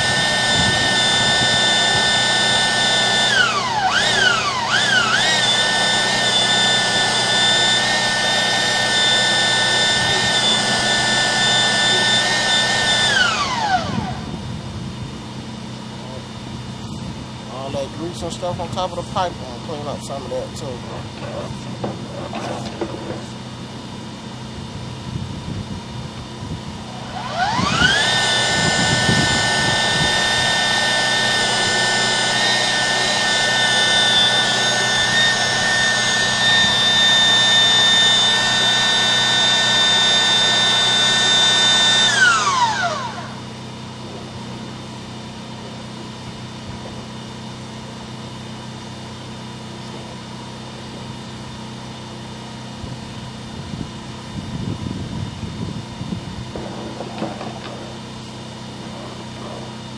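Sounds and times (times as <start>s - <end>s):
power tool motor whining: 0.0s - 59.9s.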